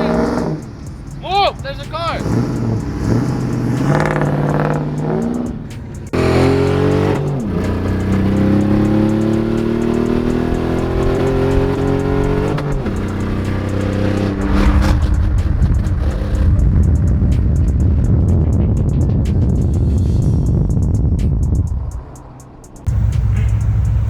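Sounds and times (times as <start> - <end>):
car engine accelerating: 0.0 - 24.0.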